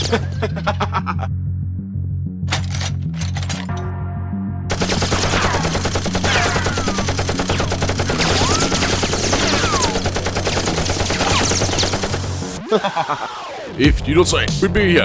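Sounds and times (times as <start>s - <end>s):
background music bass line: 0.0s - 4.8s
machine-gun rattle: 2.5s - 3.8s, 4.7s - 12.2s.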